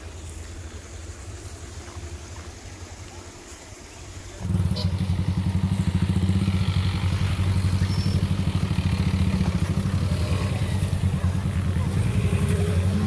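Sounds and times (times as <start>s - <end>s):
vehicle engine running: 4.2s - 13.0s.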